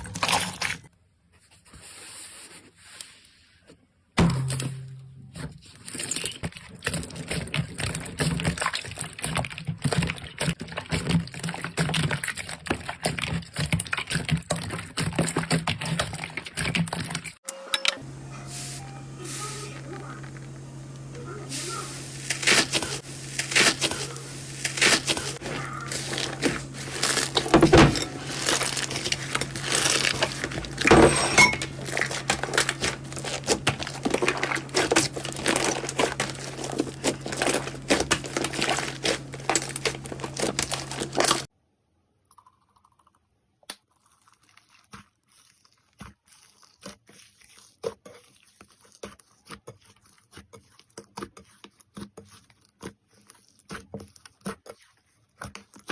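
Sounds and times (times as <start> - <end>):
slime crackling and popping: 21.6 - 30.9, 31.6 - 41.5.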